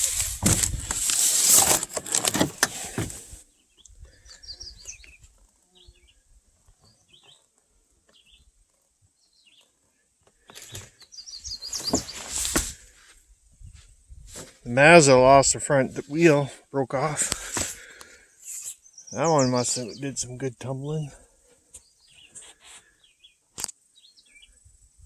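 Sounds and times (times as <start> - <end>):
rustling and crackling noise: 0.0 - 3.5, 11.6 - 14.8, 15.4 - 18.8, 21.2 - 23.0
small birds chirping: 3.4 - 12.6, 16.1 - 24.9.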